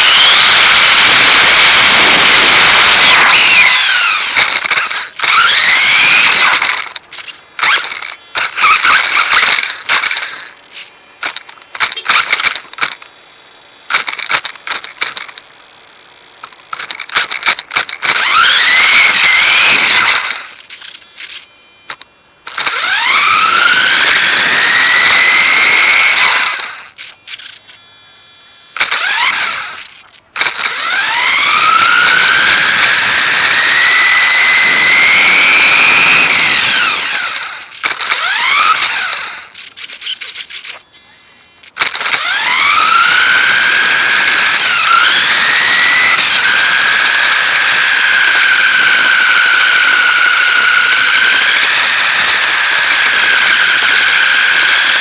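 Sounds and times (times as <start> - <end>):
electric motor whining: 0.0 - 55.0
small clicks and rattles: 6.2 - 13.1, 13.9 - 15.5, 16.4 - 18.2, 37.3 - 40.8.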